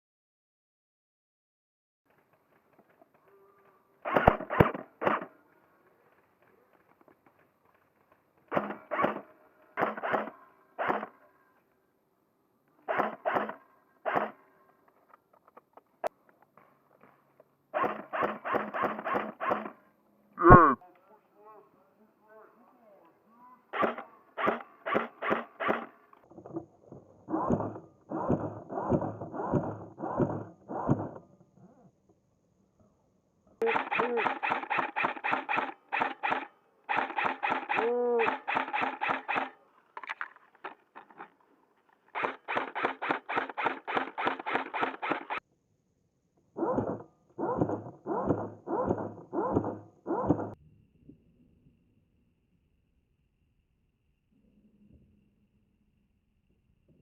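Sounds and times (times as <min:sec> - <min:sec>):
airsoft gun shots: 0:04.0 - 0:05.3, 0:08.5 - 0:11.2, 0:12.9 - 0:14.4, 0:17.8 - 0:19.8, 0:23.7 - 0:26.0, 0:33.6 - 0:39.6, 0:42.1 - 0:45.4.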